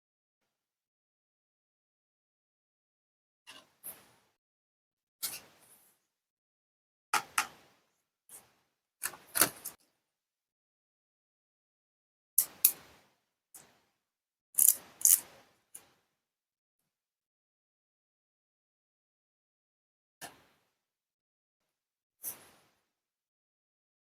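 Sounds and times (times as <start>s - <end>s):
plastic toy pieces clicking: 14.6s - 15.2s.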